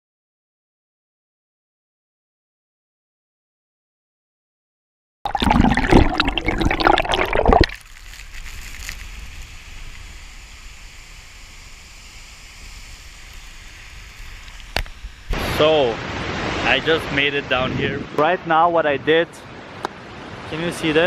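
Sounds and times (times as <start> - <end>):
waterfall rushing: 15.3 - 17.6.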